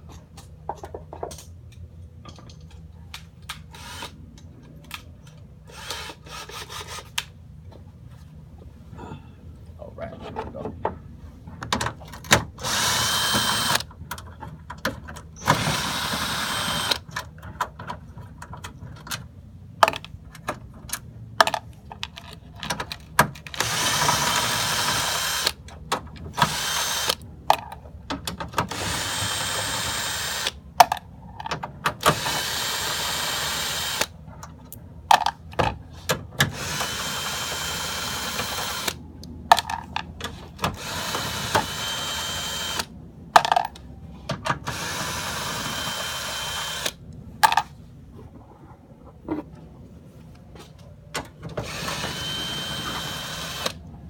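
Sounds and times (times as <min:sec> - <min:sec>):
power drill-driver running: 0:03.7 - 0:04.2, 0:05.7 - 0:07.0, 0:12.6 - 0:13.9, 0:15.4 - 0:17.0, 0:23.6 - 0:25.6, 0:26.4 - 0:27.2, 0:28.7 - 0:30.6, 0:32.1 - 0:34.1, 0:36.5 - 0:39.0, 0:40.8 - 0:42.9, 0:44.7 - 0:47.0, 0:51.6 - 0:53.8.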